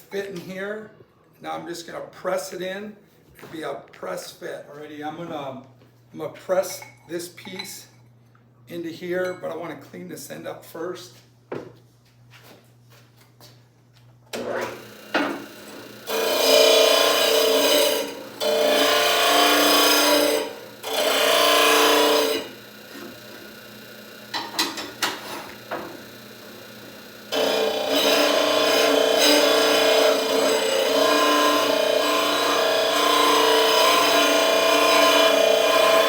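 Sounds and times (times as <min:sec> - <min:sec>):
power tool grinding pipe: 0:14.4 - 0:36.0.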